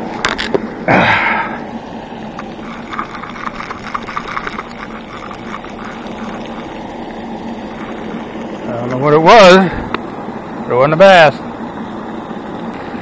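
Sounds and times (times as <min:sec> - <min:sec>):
steady low hum: 0:00.0 - 0:13.0
fishing reel ticking: 0:02.6 - 0:06.8.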